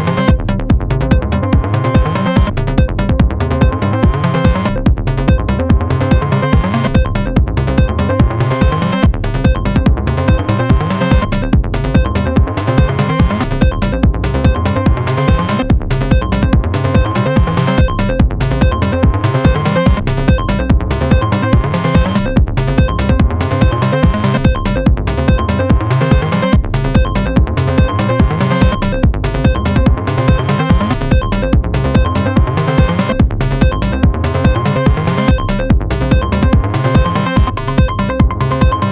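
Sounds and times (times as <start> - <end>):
drum machine beat: 0.0 - 38.9
low sequenced synth line: 0.0 - 38.9
high synth tone: 12.0 - 38.9.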